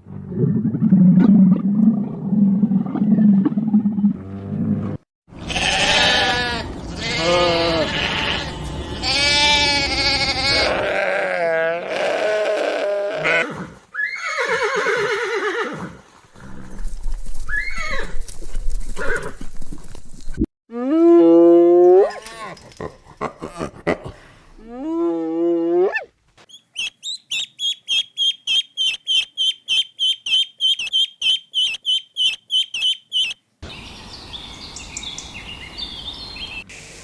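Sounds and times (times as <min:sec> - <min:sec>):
goats or sheep bleating: 0:05.4 - 0:13.6.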